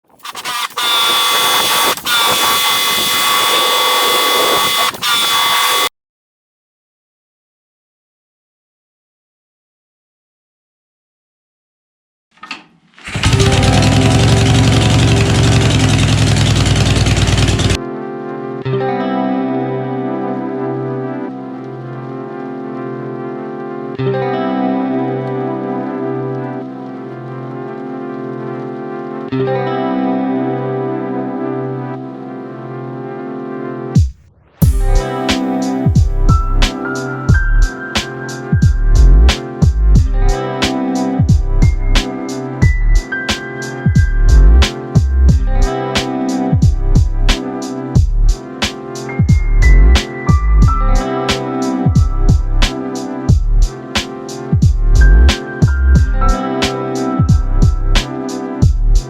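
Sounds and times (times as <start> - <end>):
power tool trigger blips: 0.1 - 5.9, 13.1 - 17.7
power tool whining: 0.1 - 5.9, 13.1 - 17.8
guitar chords with effects: 0.8 - 5.9, 13.2 - 16.8, 17.7 - 33.9, 34.6 - 54.0, 54.7 - 59.0.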